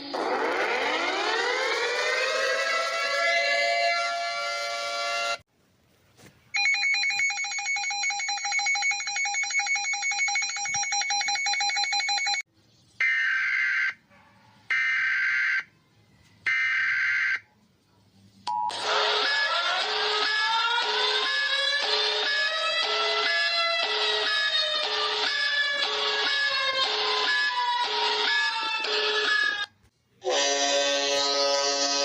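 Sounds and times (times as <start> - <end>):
alert with gliding pitches: 0.0 - 5.4.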